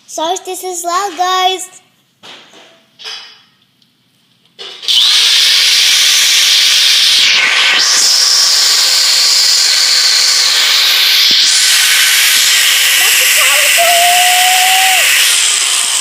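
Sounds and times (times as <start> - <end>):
power drill boring into wood: 4.8 - 16.0.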